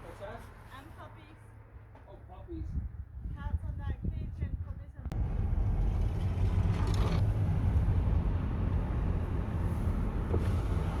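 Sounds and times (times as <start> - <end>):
car driving rumble: 5.1 - 11.0.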